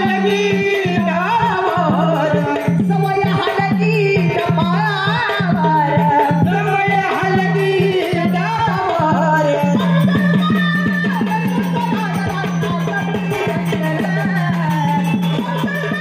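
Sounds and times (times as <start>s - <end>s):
tabla beat: 0.0s - 16.0s.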